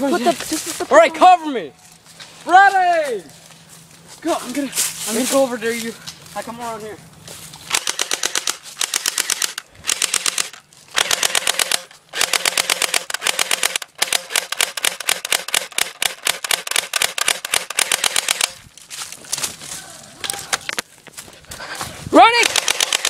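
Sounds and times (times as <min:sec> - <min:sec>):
airsoft rifle automatic fire: 0:07.7 - 0:18.6, 0:22.2 - 0:23.0.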